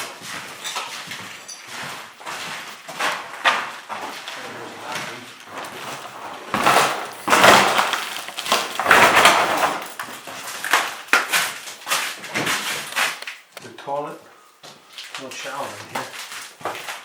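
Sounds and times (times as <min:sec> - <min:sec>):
footsteps crunching debris on wood: 0:00.0 - 0:13.6, 0:14.6 - 0:17.0.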